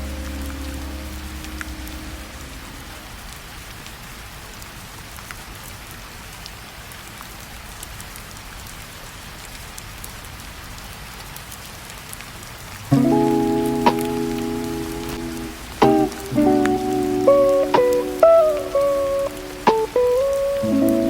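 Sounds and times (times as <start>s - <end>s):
lo-fi music: 0.0s - 3.1s, 12.9s - 21.0s
steady rain falling: 0.0s - 21.0s.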